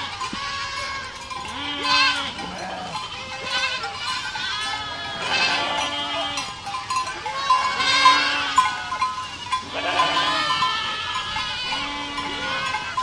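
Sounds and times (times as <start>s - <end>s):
goats bleating: 0.0s - 13.0s.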